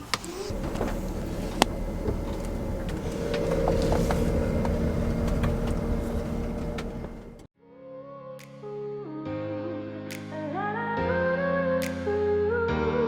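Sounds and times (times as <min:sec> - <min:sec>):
small rattles: 0:00.0 - 0:07.4
engine and road rumble: 0:00.0 - 0:07.5
faint steady hum: 0:00.0 - 0:07.5.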